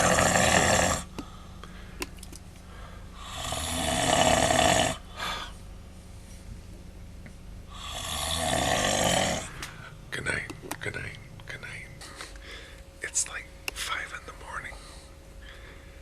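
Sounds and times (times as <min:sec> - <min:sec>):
man snoring loudly: 0:00.0 - 0:01.1, 0:03.2 - 0:05.1, 0:07.7 - 0:09.6.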